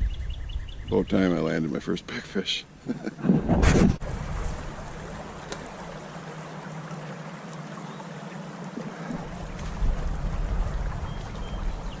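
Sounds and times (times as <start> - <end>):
wind buffeting microphone: 0.0 - 1.3, 9.2 - 12.0
stream water flowing: 4.0 - 12.0.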